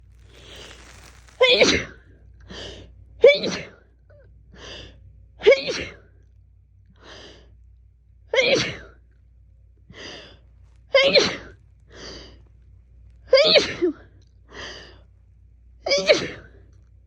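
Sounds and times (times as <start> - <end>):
woman sneezing: 11.0 - 11.5, 13.4 - 13.9, 15.9 - 16.5.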